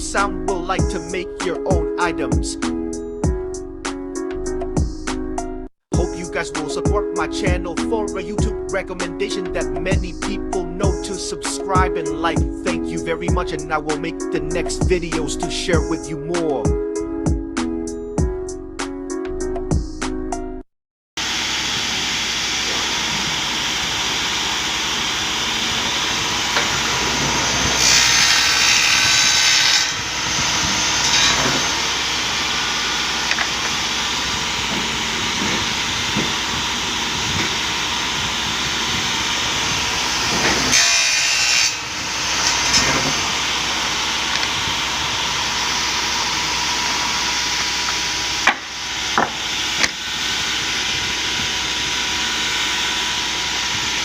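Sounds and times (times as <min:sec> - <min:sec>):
power saw cutting wood: 0:21.2 - 0:54.0.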